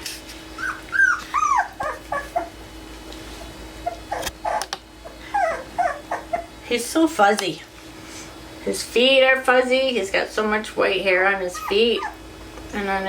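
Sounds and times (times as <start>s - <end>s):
puppy whining: 0.5s - 2.6s, 3.3s - 6.6s, 11.4s - 12.3s.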